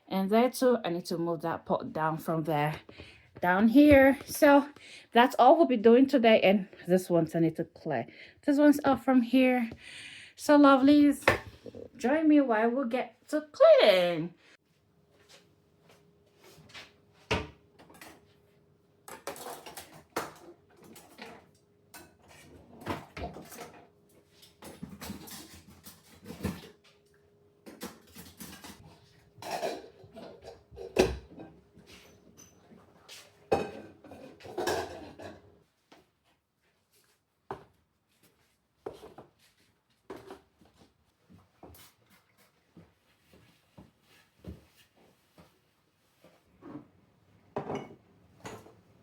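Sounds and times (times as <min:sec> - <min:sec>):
kitchenware clattering: 0:19.1 - 0:23.9, 0:27.7 - 0:32.8, 0:33.5 - 0:35.6, 0:47.6 - 0:48.8.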